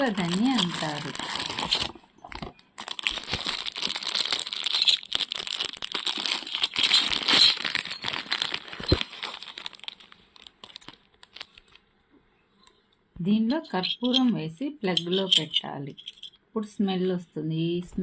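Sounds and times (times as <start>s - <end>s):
wrapper crackling and rustling: 0.0s - 11.8s.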